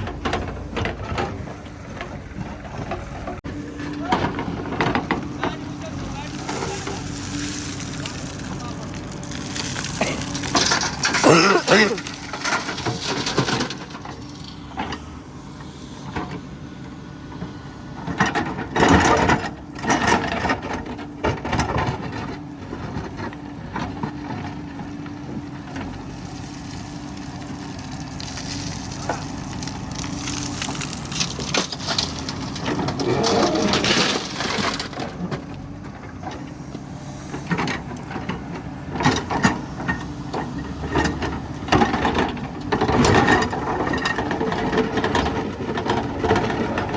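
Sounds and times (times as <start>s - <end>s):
diesel engine running: 0.0s - 46.9s
metallic clanks and rattles: 10.0s - 15.0s, 31.1s - 36.5s.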